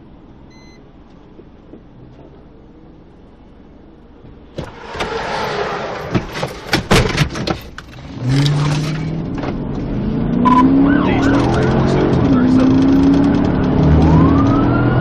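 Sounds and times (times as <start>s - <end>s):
road and wind noise: 0.0s - 15.0s
car engine accelerating: 4.5s - 15.0s.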